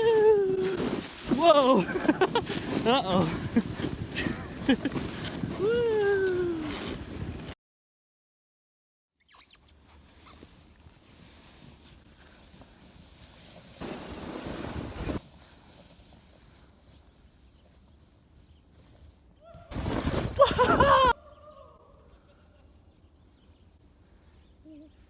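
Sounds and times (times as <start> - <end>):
sled sliding over snow: 0.0 - 7.6, 9.9 - 21.2.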